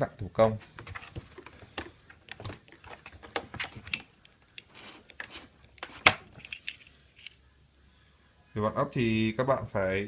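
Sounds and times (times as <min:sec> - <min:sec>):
drill accessories clicking: 0:01.8 - 0:07.4.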